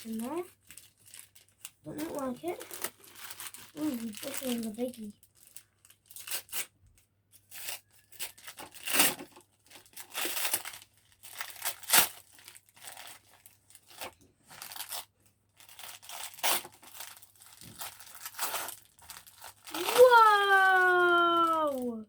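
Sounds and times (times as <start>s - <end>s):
wrapping being torn and crinkled: 0.0s - 22.0s.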